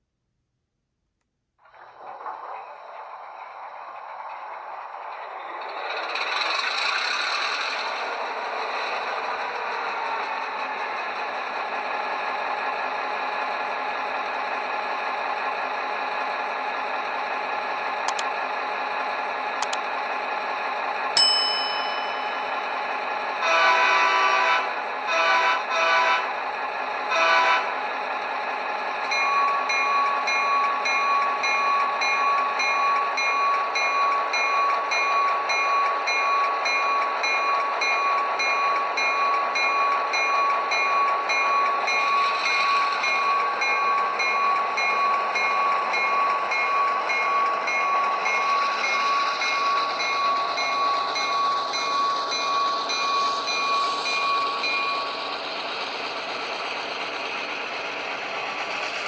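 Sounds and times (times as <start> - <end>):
locomotive bell ringing: 21.2 - 22.8
model locomotive horn toot: 23.4 - 26.4, 27.1 - 27.8.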